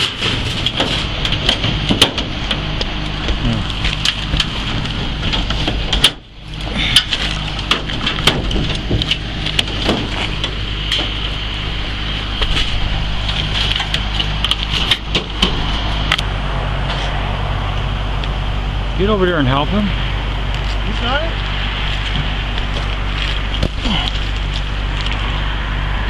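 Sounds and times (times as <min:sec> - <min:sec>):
low machinery hum: 0:00.0 - 0:26.0
knocks and clanks of hand work: 0:00.2 - 0:02.6, 0:07.0 - 0:11.2.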